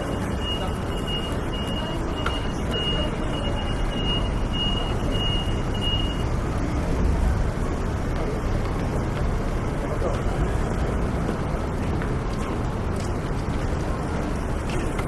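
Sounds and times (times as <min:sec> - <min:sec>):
high electronic beep: 0:00.0 - 0:06.3
passers-by: 0:00.0 - 0:15.0
traffic din: 0:00.0 - 0:15.0.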